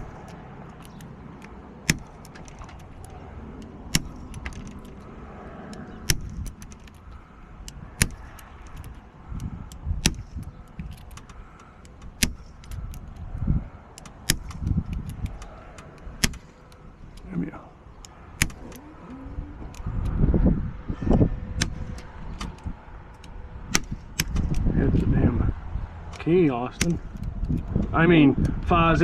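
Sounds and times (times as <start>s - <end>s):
hammer tapping key in lock: 0.0s - 5.1s, 5.7s - 17.3s, 21.5s - 24.7s.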